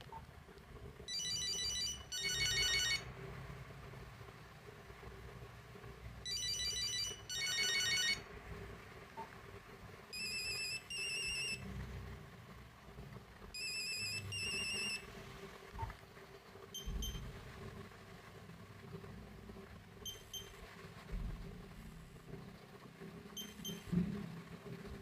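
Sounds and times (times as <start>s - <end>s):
monophonic phone ringtone melody: 1.1s - 3.1s, 6.3s - 8.2s, 10.2s - 11.6s, 13.6s - 15.0s.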